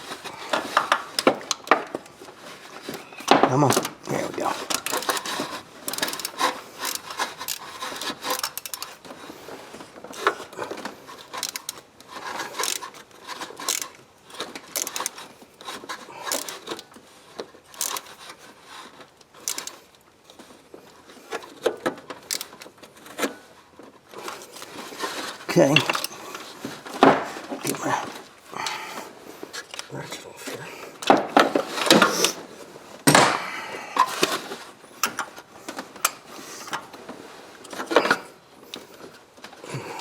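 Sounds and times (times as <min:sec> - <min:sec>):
metal tools clicking and scraping: 0:02.6 - 0:09.1, 0:10.2 - 0:16.9, 0:17.7 - 0:18.8, 0:19.4 - 0:19.9, 0:24.2 - 0:32.4.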